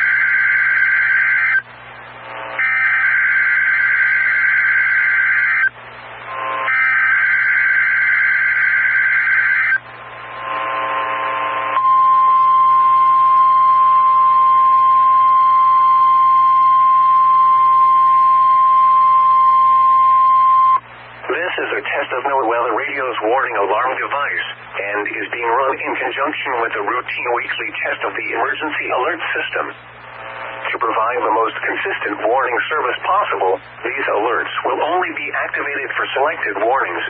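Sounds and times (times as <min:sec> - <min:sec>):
warbling digital data buzz: 0:00.0 - 0:01.7, 0:02.3 - 0:20.8
steady alarm tone: 0:00.0 - 0:20.9
radio static: 0:00.0 - 0:37.0.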